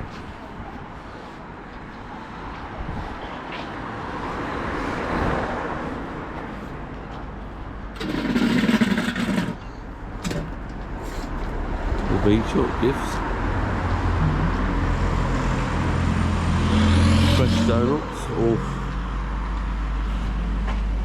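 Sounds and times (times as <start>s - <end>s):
loud noisy traffic burst: 0.0s - 21.0s
car passing by: 2.0s - 6.9s, 11.2s - 21.0s.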